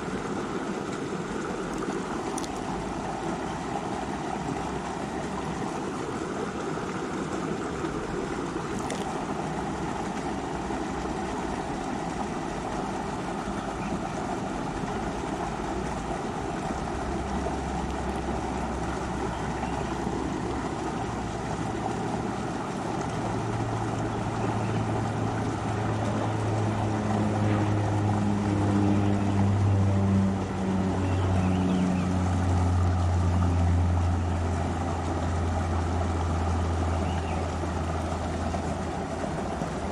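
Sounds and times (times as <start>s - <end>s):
low droning hum: 0.0s - 39.9s
river rushing over rocks: 0.0s - 39.9s.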